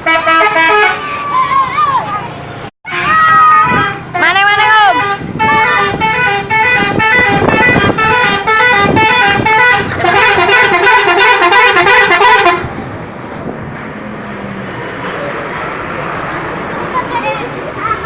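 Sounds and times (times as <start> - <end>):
musical bus horn: 0.0 - 1.4, 2.9 - 12.8
road traffic noise: 0.0 - 18.0.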